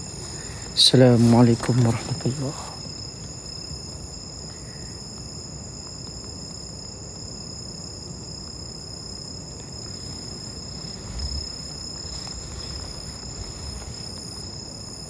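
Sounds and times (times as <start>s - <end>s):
night insects chirring: 0.0s - 15.0s
low background rumble: 9.8s - 14.9s.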